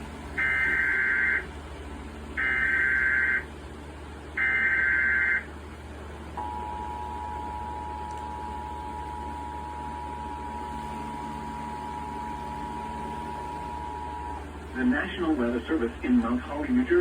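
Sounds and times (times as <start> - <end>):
two-tone attention signal: 0.4 - 1.5, 2.4 - 3.4.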